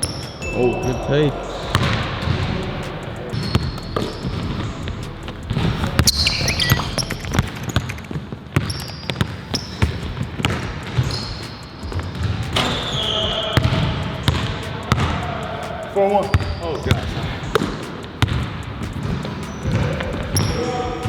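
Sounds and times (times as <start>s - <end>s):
shoe squeaks: 0.0s - 21.0s
basketball bouncing on hard court: 5.5s - 15.3s, 16.3s - 20.8s.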